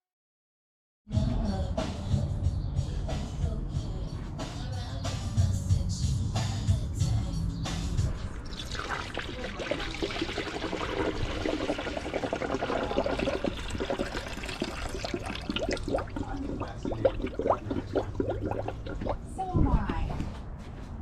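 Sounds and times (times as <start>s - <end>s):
liquid pouring and splashing: 8.5s - 19.3s.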